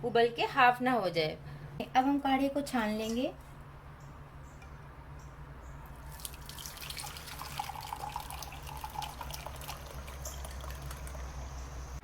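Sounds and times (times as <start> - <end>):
liquid pouring and splashing: 5.9 - 11.6.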